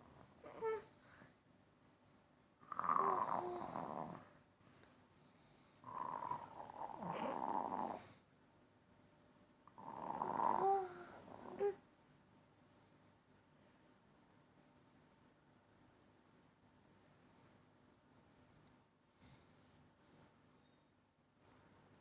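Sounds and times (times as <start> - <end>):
toddler pretend snoring: 2.6 - 4.3, 5.8 - 8.2, 9.8 - 11.8.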